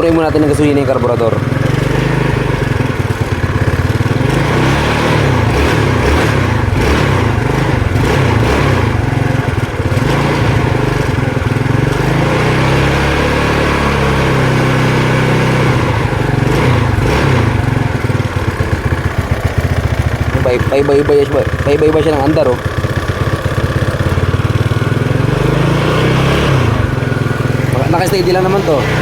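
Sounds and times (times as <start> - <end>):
scooter engine running unevenly: 0.0 - 29.0.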